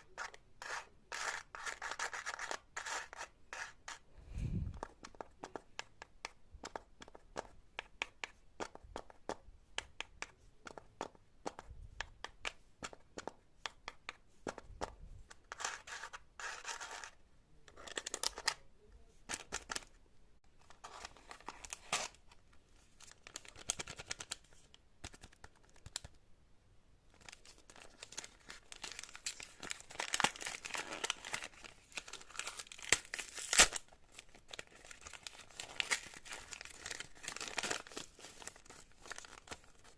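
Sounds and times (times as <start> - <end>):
crinkling and ripping: 27.2 - 39.9.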